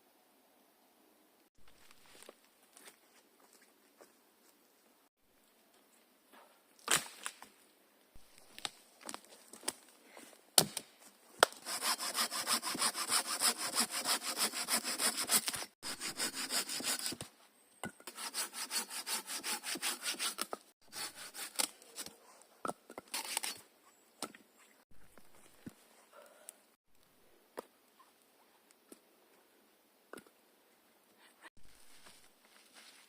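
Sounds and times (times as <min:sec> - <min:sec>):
hand saw cutting wood: 0:11.4 - 0:17.3, 0:18.0 - 0:22.1.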